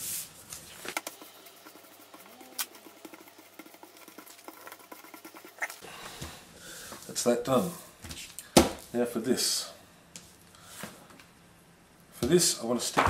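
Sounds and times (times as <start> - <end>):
paper rustling and scratching: 0.0 - 5.8.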